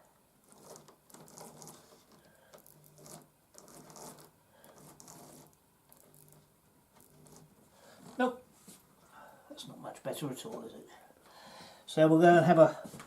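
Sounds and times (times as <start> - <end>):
small electric motor buzzing: 2.6 - 8.2.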